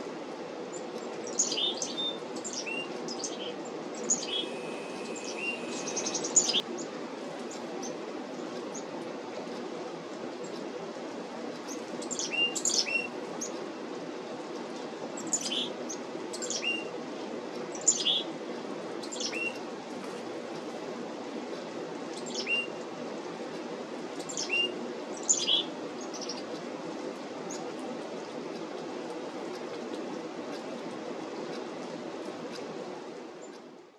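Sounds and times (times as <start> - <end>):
steady low hiss: 0.0 - 33.9
chickadees calling: 4.0 - 6.6.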